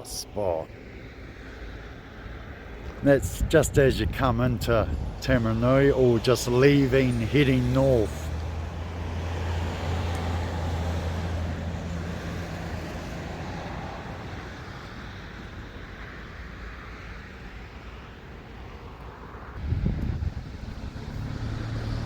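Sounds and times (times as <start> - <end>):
passing vehicle engine drone: 4.1 - 15.3, 19.6 - 22.0.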